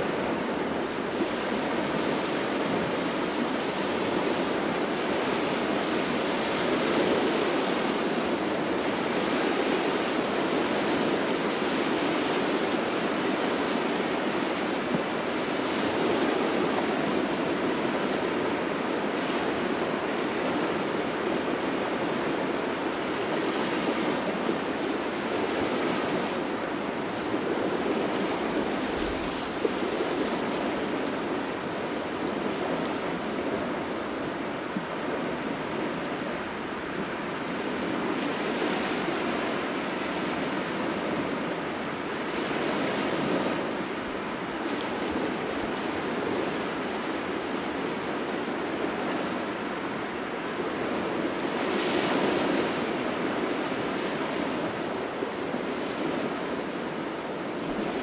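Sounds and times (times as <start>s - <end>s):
gusty wind: 0.0s - 58.0s
small waves washing on shore: 0.0s - 58.0s.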